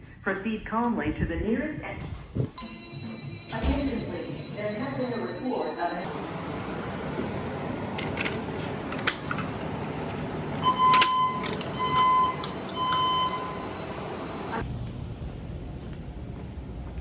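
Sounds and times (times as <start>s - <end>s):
fire alarm tone pulses: 2.6s - 7.1s, 10.6s - 14.6s.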